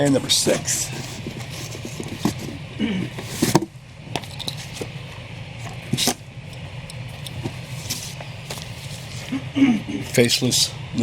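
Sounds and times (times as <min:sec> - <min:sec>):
steady low hum: 0:00.0 - 0:11.0
paper rustling and slapping: 0:07.4 - 0:09.3.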